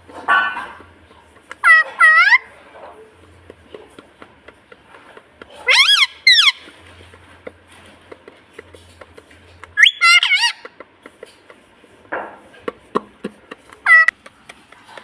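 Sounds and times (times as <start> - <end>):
parrot shrill calls: 1.6 - 2.5, 5.6 - 6.7, 9.8 - 10.7, 13.8 - 14.1.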